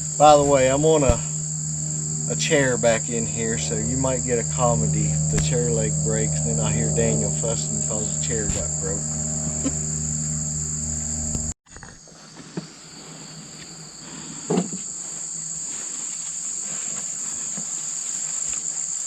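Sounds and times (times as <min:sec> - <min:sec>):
crickets and insects chirring: 0:00.0 - 0:11.6
low steady hum: 0:00.0 - 0:11.6.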